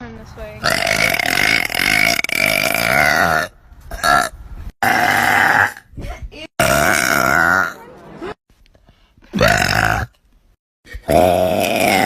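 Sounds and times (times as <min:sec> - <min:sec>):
girl burping: 0:00.6 - 0:05.9, 0:06.6 - 0:07.8, 0:09.3 - 0:10.2, 0:10.9 - 0:12.0.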